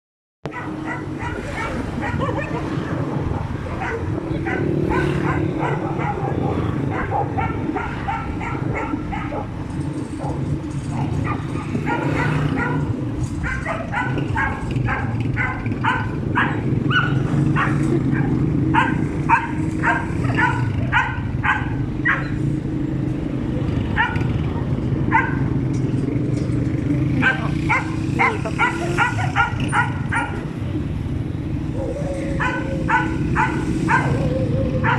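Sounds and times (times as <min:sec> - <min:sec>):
small dog yapping: 0:11.0 - 0:22.4, 0:27.2 - 0:30.4, 0:31.8 - 0:34.9.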